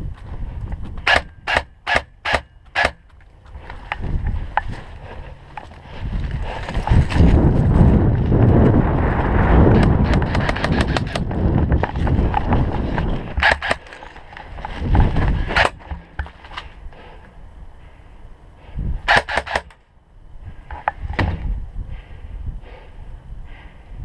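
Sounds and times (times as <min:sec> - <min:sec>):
microphone handling rumble: 0:03.4 - 0:16.8, 0:20.5 - 0:21.8
rapid sharp clicks: 0:09.8 - 0:11.3.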